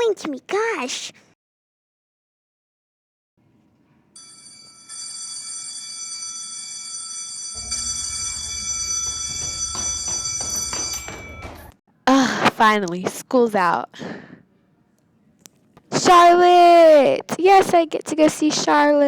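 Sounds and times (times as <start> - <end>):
electric school bell ringing: 4.2 - 11.7.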